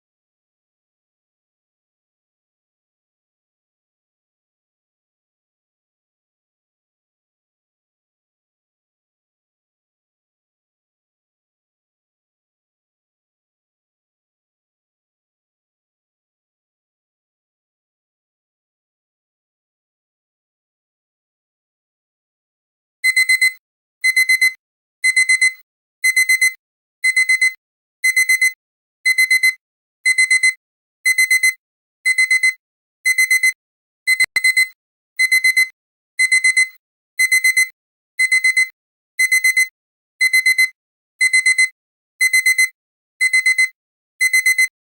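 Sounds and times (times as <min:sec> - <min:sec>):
alarm clock beeping: 0:23.0 - 0:44.7.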